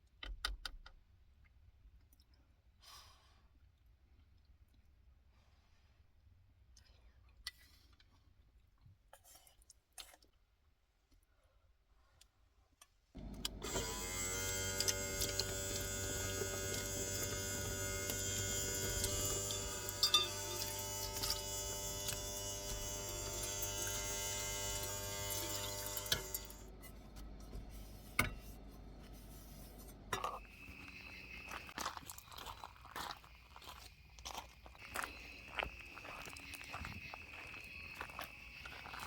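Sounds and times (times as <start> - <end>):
electric pump whining: 13.2 - 31.8.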